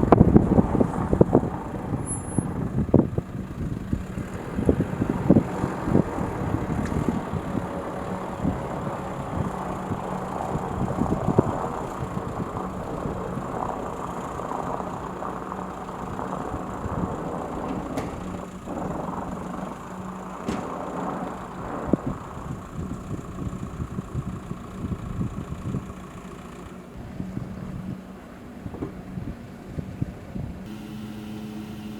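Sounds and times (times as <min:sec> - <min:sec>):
engine running with low hum: 0:00.0 - 0:31.9.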